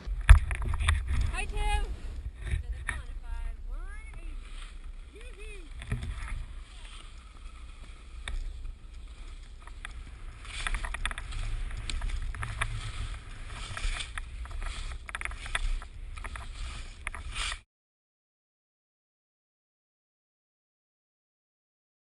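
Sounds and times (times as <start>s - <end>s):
wind buffeting microphone: 0.0s - 17.5s
clicks and crackles: 0.0s - 17.6s.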